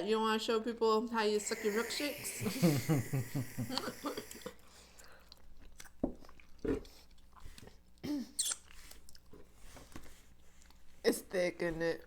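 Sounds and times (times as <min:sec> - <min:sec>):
slurping milkshake through a straw: 0:01.2 - 0:04.6.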